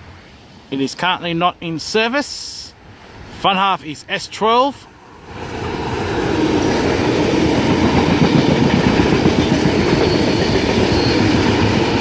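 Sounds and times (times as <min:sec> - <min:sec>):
electric train passing: 0:04.8 - 0:12.0.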